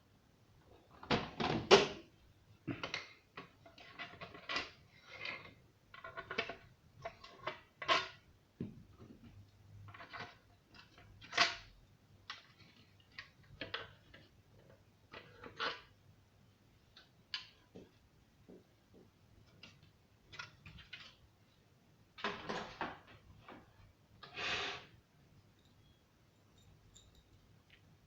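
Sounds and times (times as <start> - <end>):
tools and metal parts clicking: 25.6 - 27.8.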